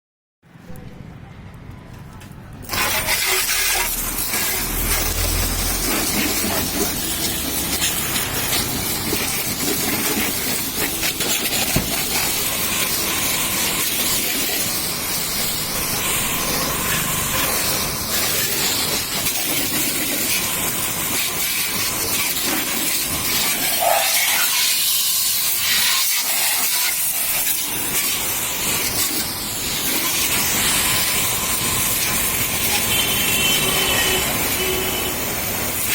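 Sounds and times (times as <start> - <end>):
water spray jet hissing: 2.6 - 35.9.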